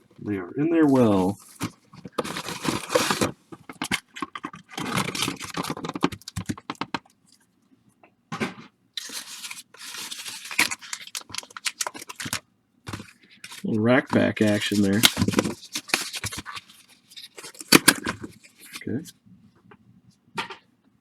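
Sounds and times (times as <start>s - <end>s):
plastic wrapping crinkling and tearing: 1.4s - 7.1s, 9.0s - 18.9s.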